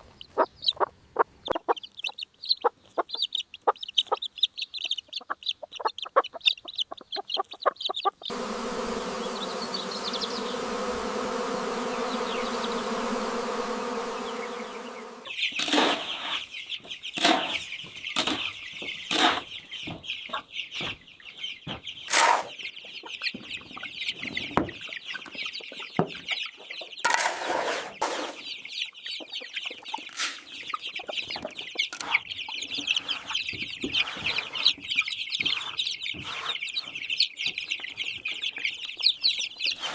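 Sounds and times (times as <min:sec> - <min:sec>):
machine hum with pitched tones: 0:08.3 - 0:15.4.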